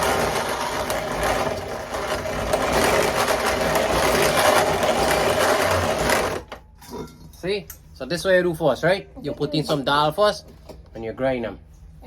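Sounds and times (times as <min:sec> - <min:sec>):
hand-cranked grinding mill rattling: 0:00.0 - 0:06.6.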